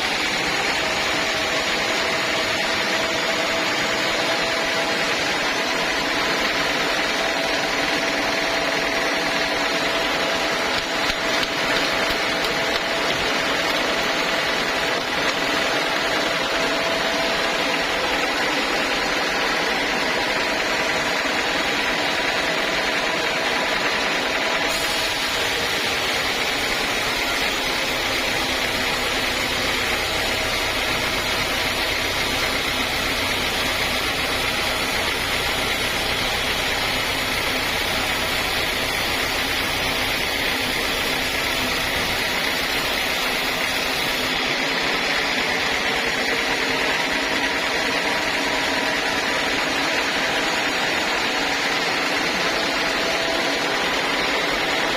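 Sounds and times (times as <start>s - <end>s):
saw blade cutting log: 0.0s - 19.6s
sawmill saw motor hum: 0.0s - 54.9s.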